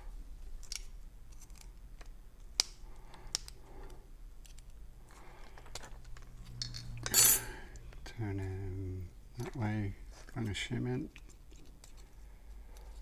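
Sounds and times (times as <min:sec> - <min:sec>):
metal lock parts clicking and scraping: 0:05.7 - 0:07.6.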